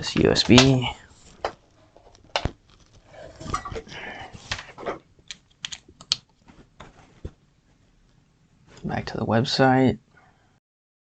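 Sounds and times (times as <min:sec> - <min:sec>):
cable and controller rustling: 0:00.0 - 0:07.4
computer keyboard clicks: 0:05.3 - 0:06.3.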